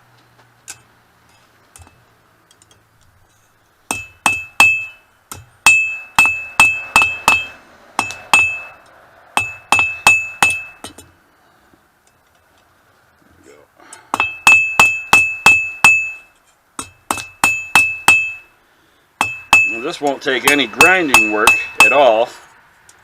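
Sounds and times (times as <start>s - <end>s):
hammer striking steel on anvil: 3.9s - 8.8s, 9.4s - 11.1s, 14.1s - 18.5s, 19.2s - 22.3s.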